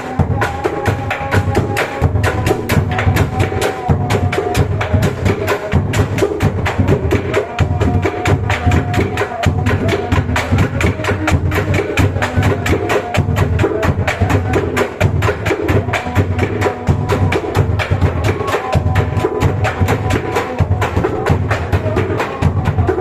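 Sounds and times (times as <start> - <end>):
large drum beaten fast: 0.0 - 23.0.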